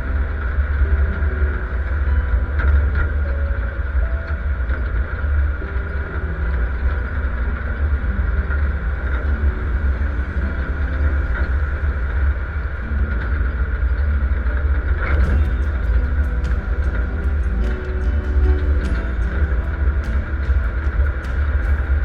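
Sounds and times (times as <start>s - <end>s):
sharp knocks or rattles: 15.1s - 22.0s.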